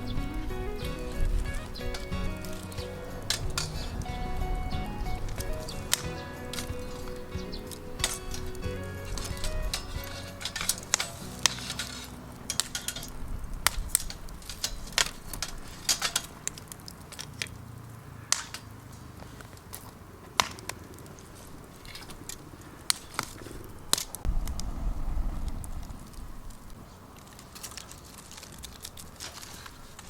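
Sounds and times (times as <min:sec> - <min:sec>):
wood cracking and snapping: 0:05.3 - 0:17.7, 0:18.3 - 0:24.7, 0:25.5 - 0:30.0.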